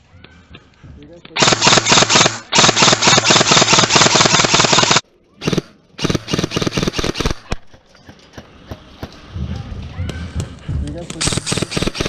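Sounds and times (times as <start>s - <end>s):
airsoft gun full-auto bursts: 1.4s - 7.5s, 11.2s - 12.0s.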